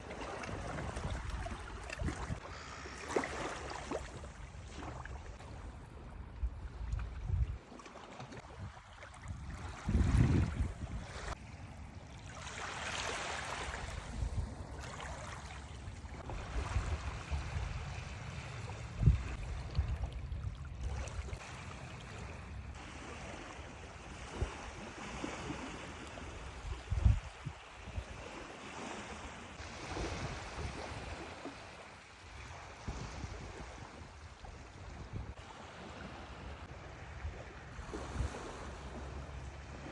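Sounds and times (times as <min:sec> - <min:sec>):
waves washing on shore: 0:09.4 - 0:19.9, 0:21.0 - 0:39.9.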